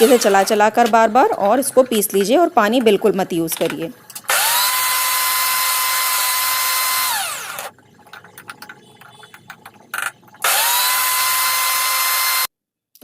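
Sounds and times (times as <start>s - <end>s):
mixer grinder motor whining: 4.2s - 7.7s, 10.4s - 12.5s
faint knocks and rattles: 8.0s - 10.4s.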